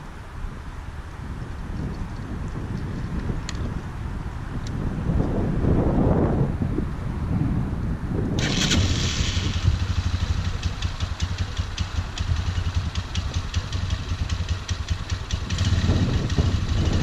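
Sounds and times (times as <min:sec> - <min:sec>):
atv engine starting and idling: 0:08.4 - 0:17.0.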